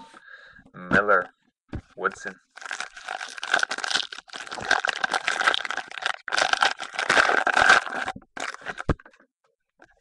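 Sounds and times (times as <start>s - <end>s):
wrapper crinkling: 2.5s - 8.9s.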